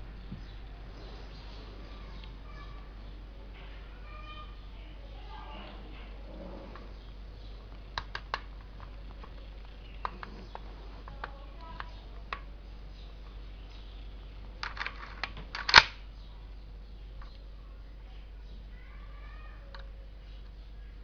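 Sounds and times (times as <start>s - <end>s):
rifle metallic clicks: 14.6s - 16.0s.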